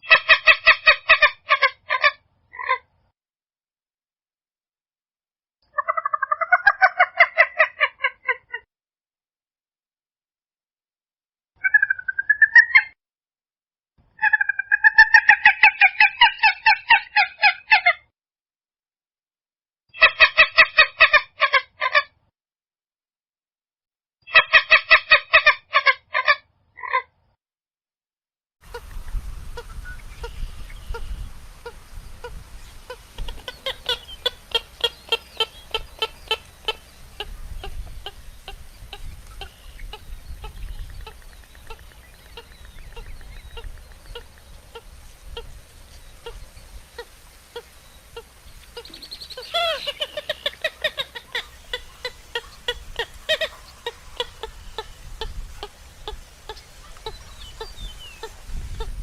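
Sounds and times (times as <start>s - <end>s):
bird rapid clucking calls: 0.0s - 2.8s, 5.7s - 8.6s, 11.6s - 13.0s, 14.2s - 17.9s, 28.7s - 59.0s.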